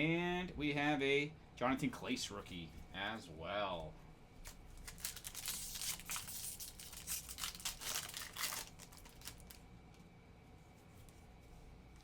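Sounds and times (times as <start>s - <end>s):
card wrappers crinkling and rustling: 4.4s - 9.6s.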